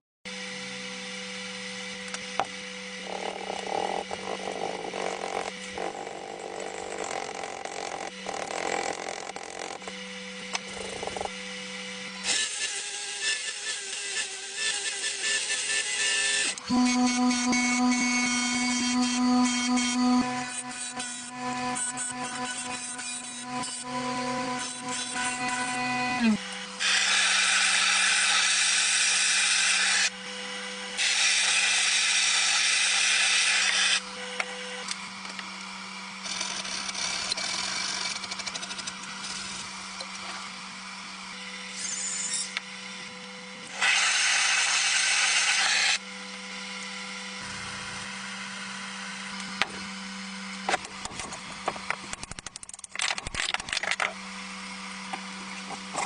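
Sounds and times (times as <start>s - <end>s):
power tool motor humming: 0.3s - 52.5s.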